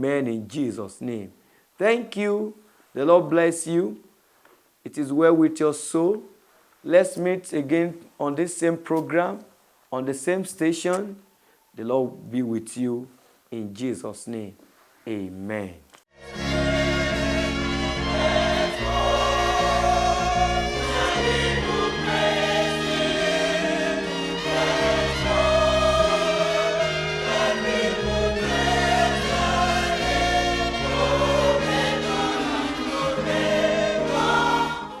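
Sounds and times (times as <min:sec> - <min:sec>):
choir singing gospel music: 0:16.2 - 0:35.0.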